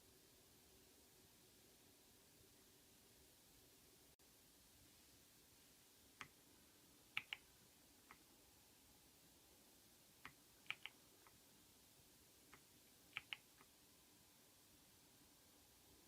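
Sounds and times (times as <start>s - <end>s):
faint steady hiss: 0.0s - 16.0s
mechanical keyboard key clicks: 13.1s - 13.4s.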